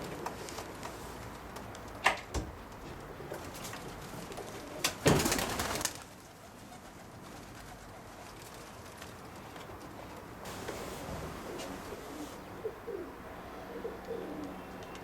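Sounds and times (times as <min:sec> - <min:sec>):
pigeons cooing: 0:11.4 - 0:14.8.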